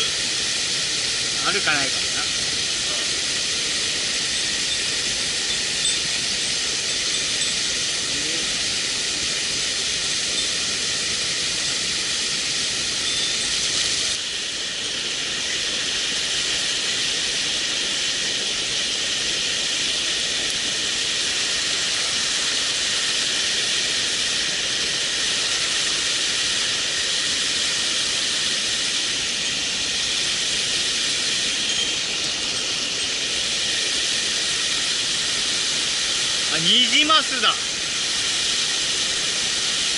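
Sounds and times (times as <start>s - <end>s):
stream water rushing: 19.4s - 39.9s.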